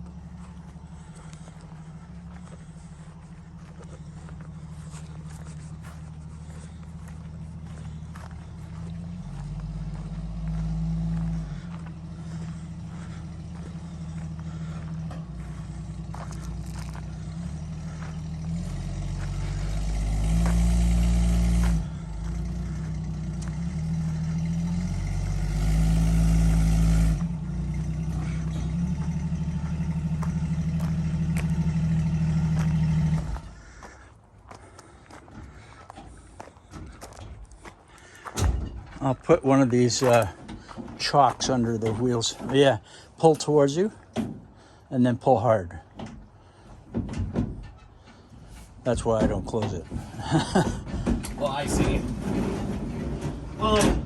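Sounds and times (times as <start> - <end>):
car engine revving: 0.0 - 34.8.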